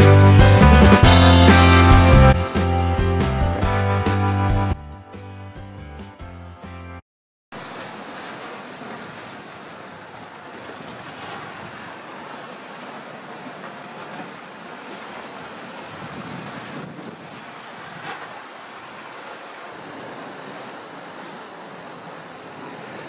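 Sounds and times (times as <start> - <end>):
music track: 0.0 - 6.2
waves breaking on shore: 7.5 - 23.0
wind on microphone: 15.8 - 18.4.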